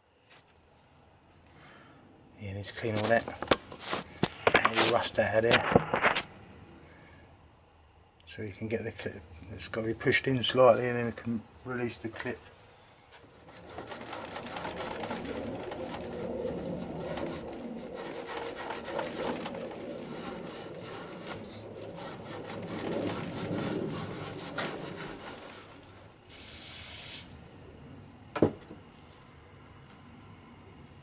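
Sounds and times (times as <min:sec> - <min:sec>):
scraping and rubbing rust: 0:02.8 - 0:06.3, 0:13.1 - 0:27.3
short hiss: 0:26.3 - 0:27.3.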